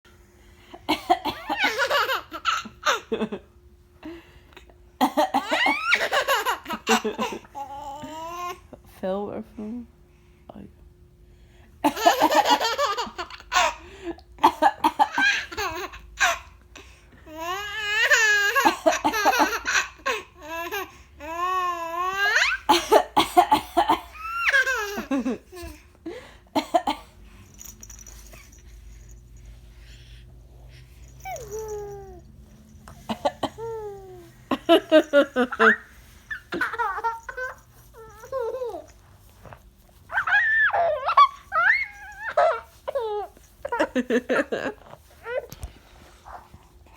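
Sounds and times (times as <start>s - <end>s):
baby laughing and coughing: 0.8s - 3.4s, 5.0s - 7.7s, 11.8s - 13.8s, 14.4s - 16.6s, 17.9s - 20.9s, 22.2s - 25.2s, 26.5s - 27.2s, 33.0s - 38.9s
baby laughing and squealing: 33.2s - 39.0s, 40.1s - 45.5s.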